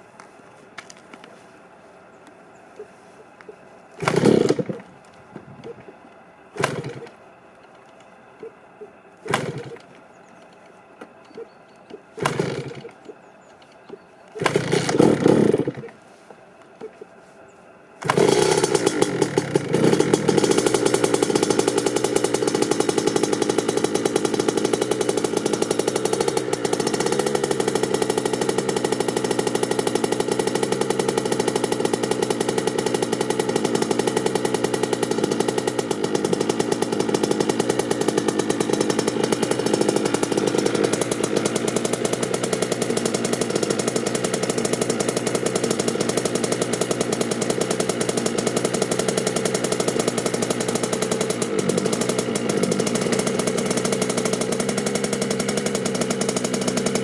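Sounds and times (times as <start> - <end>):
two-stroke engine starting and running: 3.2 - 17.1, 17.9 - 57.0.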